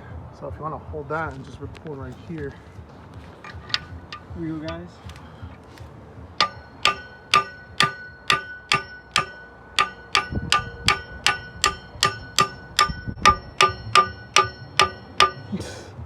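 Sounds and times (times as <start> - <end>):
hammer striking steel bar: 3.5 - 4.9, 6.4 - 15.6.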